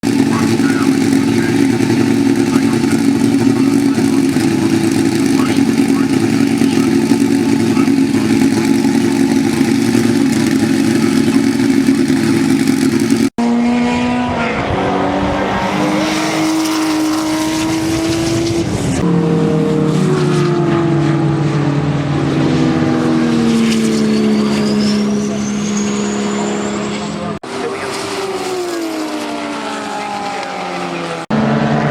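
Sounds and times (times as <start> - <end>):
turbocharger whistle: 0.0 - 13.2, 23.4 - 31.9
car engine revving: 0.0 - 31.9.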